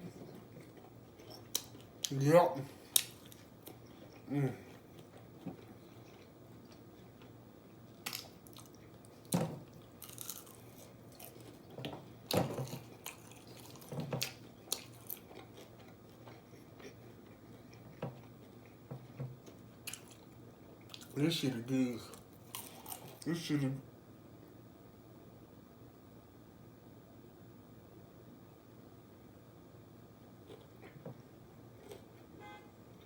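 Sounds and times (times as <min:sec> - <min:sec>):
person chewing crunchy food: 0:00.6 - 0:07.4, 0:08.0 - 0:21.2, 0:22.0 - 0:23.3, 0:31.7 - 0:32.2.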